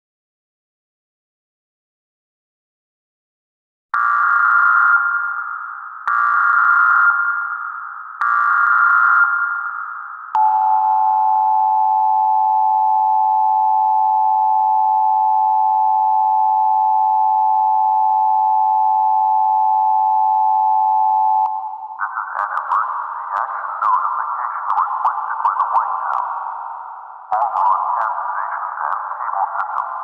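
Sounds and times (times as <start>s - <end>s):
electronic tone: 9.2s - 22.8s.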